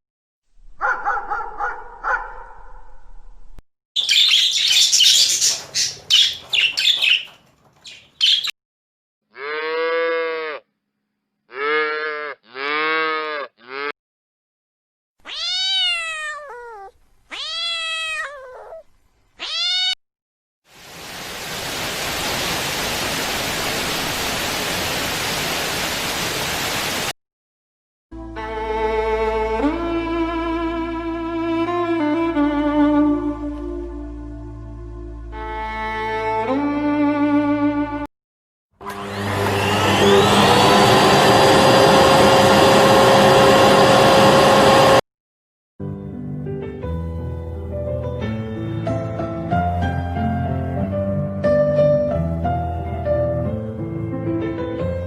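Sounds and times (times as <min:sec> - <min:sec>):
high chirping: 0:04.0 - 0:08.5
cat meowing: 0:15.2 - 0:20.0.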